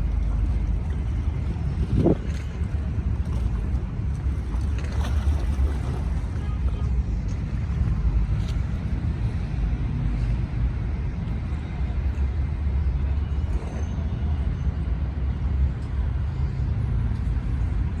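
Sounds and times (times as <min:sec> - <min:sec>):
road traffic rumble: 0:00.0 - 0:18.0.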